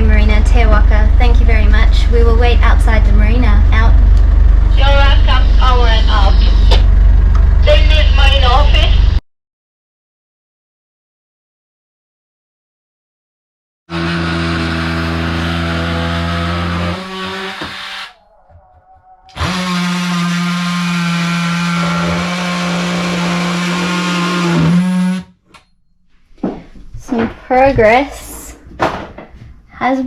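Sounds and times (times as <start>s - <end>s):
electric power tool running: 13.9s - 18.2s, 19.3s - 25.3s.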